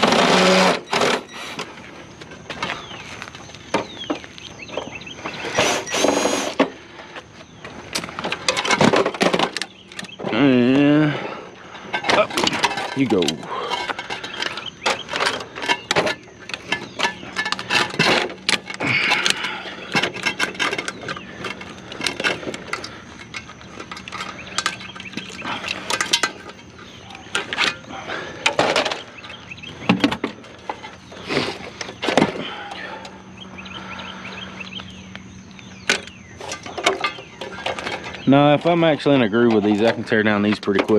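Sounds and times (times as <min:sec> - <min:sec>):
appliance parts clattering: 0:00.0 - 0:03.1, 0:07.6 - 0:10.6, 0:11.7 - 0:33.2, 0:35.8 - 0:40.9
faint steady hum: 0:00.0 - 0:40.9.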